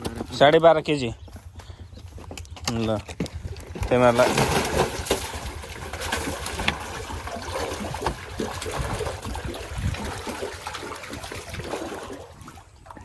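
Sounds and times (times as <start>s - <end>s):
water splashing and sloshing: 2.6s - 13.0s.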